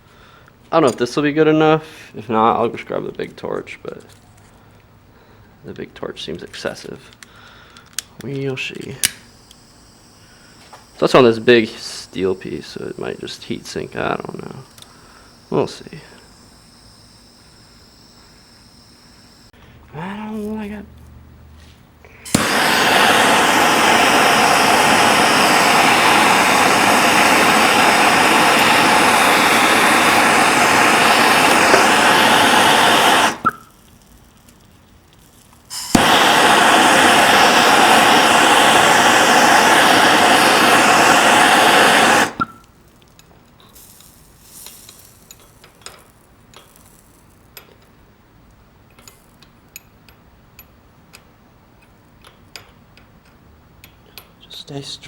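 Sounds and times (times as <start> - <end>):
gas torch hissing: 6.2 - 20.7, 22.1 - 47.7.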